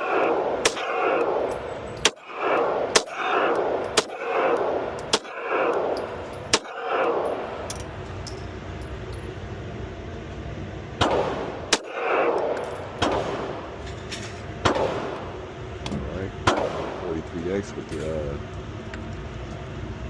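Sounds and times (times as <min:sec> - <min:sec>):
pistol shots echoing indoors: 0:00.0 - 0:07.8, 0:11.0 - 0:13.8, 0:14.6 - 0:15.4, 0:16.4 - 0:17.0.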